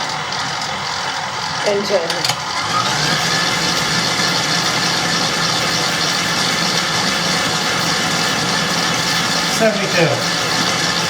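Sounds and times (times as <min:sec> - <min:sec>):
stand mixer running: 0:00.0 - 0:11.0.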